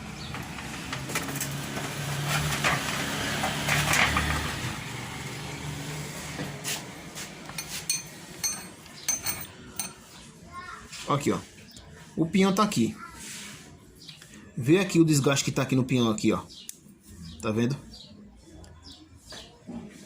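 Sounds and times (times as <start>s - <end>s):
metal tools clinking and knocking: 7.5s - 10.1s
ringing metallic clinks: 7.6s - 10.0s.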